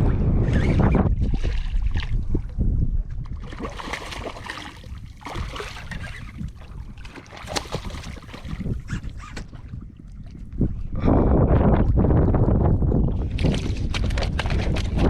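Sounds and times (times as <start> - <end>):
wind rumble on microphone: 0.0 - 15.0
water splashing: 3.4 - 10.4.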